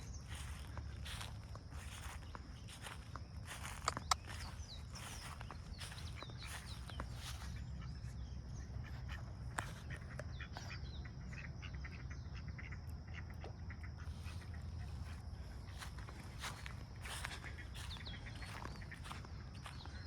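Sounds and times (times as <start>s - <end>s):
ducks quacking: 0.0s - 20.0s.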